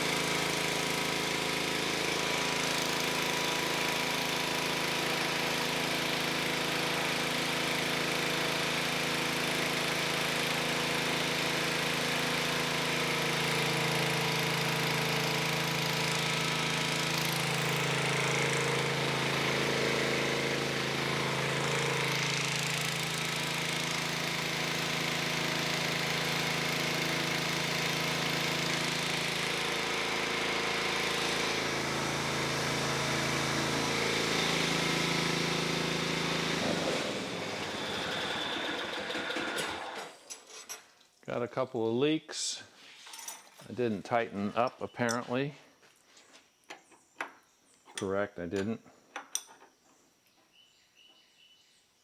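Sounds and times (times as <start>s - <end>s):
tractor engine running: 0.0s - 40.2s.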